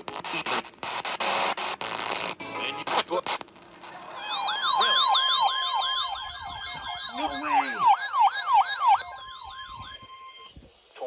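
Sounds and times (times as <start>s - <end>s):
electronic warbling siren: 3.9s - 11.0s
steady alarm tone: 4.2s - 10.6s.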